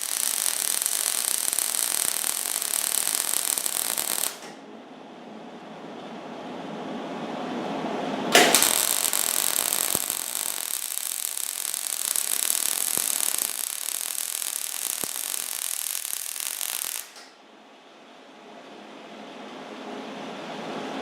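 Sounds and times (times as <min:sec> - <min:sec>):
welder arc crackling sizzle: 0:00.0 - 0:04.6, 0:08.3 - 0:17.4.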